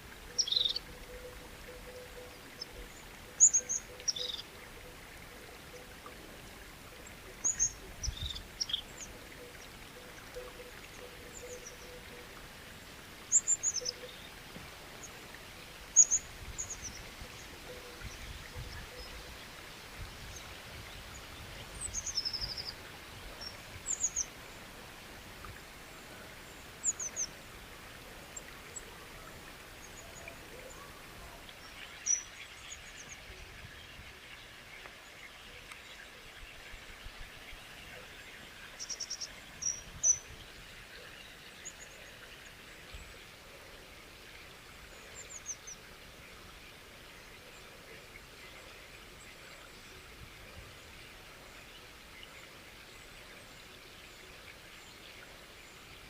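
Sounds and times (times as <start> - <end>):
running water hiss: 0.0 - 56.0
small birds chirping: 0.3 - 0.8, 1.6 - 4.8, 7.0 - 12.2, 13.3 - 25.0.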